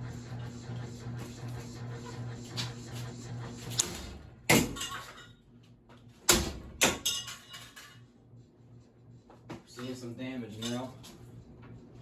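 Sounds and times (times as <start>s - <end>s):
fan motor hum: 0.0s - 12.0s
metal blades clanking against fan: 9.8s - 11.2s.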